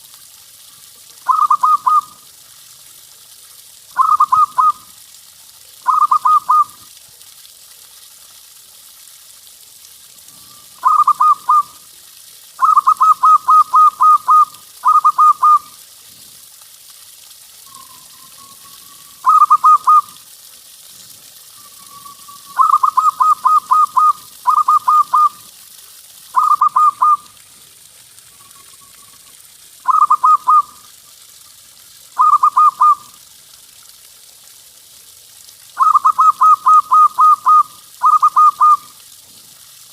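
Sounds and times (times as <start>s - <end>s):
dove cooing staccato: 1.2s - 2.2s, 4.0s - 4.8s, 5.8s - 6.8s, 10.8s - 11.7s, 12.6s - 15.7s, 19.2s - 20.2s, 22.6s - 25.4s, 26.4s - 27.2s, 29.8s - 30.7s, 32.2s - 33.0s, 35.8s - 38.9s.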